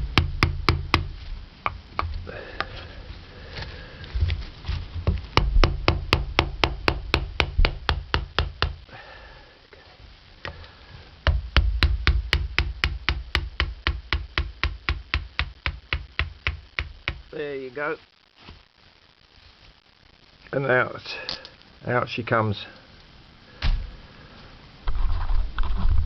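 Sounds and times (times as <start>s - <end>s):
rapid tapping on metal trim: 11.3s - 17.3s.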